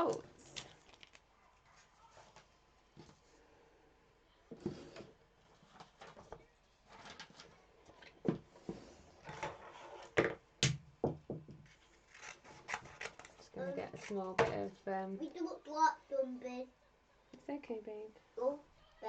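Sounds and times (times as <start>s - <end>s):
hands handling small pieces: 0.4s - 1.3s.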